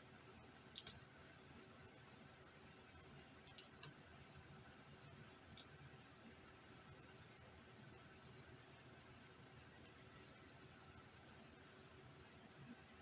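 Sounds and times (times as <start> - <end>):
small parts and tools clicking: 0.7 - 1.1.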